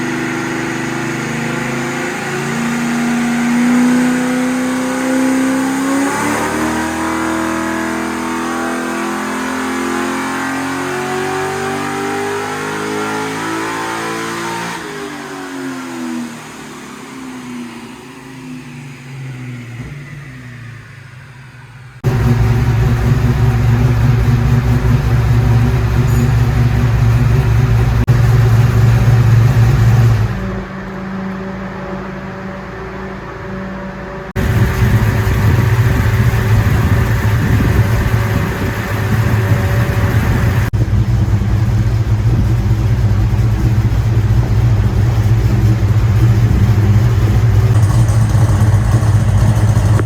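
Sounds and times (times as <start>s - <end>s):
engine revving on dyno: 0.0s - 30.7s, 34.3s - 40.9s, 45.2s - 50.0s
loud steady low drone: 21.6s - 50.0s.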